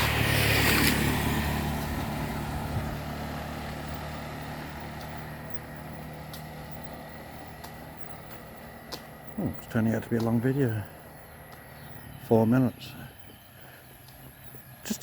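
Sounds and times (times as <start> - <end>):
vehicle engine passing: 0.0 - 15.0.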